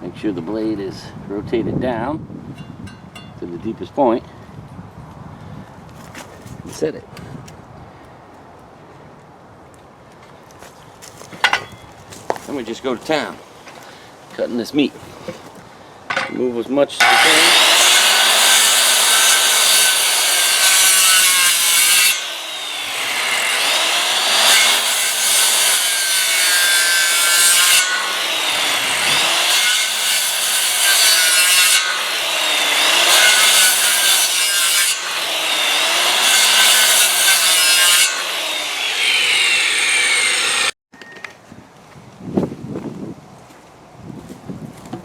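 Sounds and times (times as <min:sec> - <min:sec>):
circular saw cutting wood: 0:16.9 - 0:40.8.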